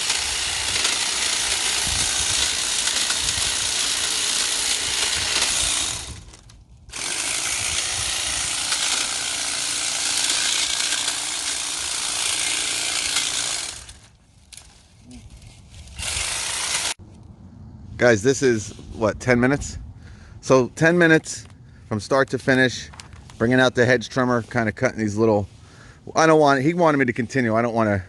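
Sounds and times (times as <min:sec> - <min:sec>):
hedge trimmer cutting brush: 0:00.0 - 0:14.7, 0:15.3 - 0:17.0.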